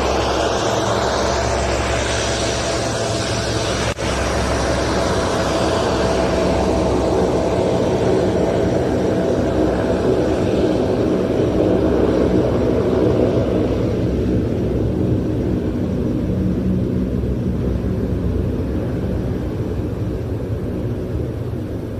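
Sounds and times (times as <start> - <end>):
aircraft engines droning: 0.0 - 21.9.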